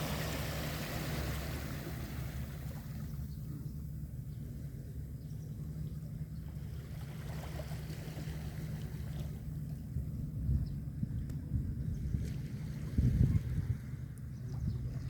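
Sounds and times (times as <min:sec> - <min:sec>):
low rumble of sea water: 0:00.0 - 0:15.0
wind buffeting microphone: 0:09.8 - 0:15.0.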